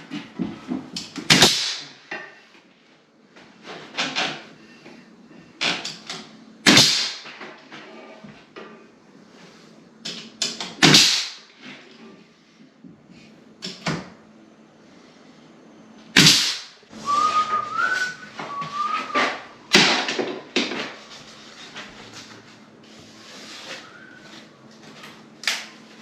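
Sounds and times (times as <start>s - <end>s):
person whistling: 17.0s - 19.6s, 23.8s - 24.4s.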